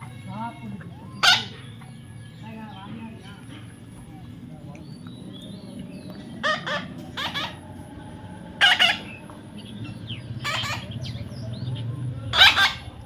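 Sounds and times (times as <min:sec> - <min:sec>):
parrot squawking: 0:00.0 - 0:02.5, 0:05.9 - 0:07.9, 0:08.5 - 0:13.0.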